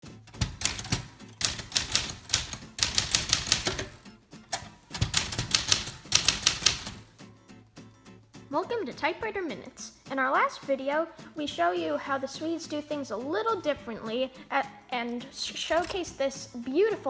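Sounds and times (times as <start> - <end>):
typewriter key strikes: 0.3 - 4.0, 4.6 - 7.1, 15.7 - 16.1.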